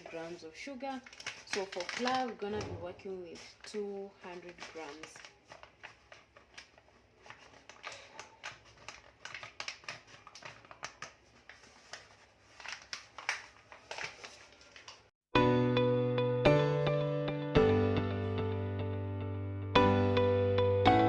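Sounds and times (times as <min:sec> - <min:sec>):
guitar music: 0:15.4 - 0:21.0.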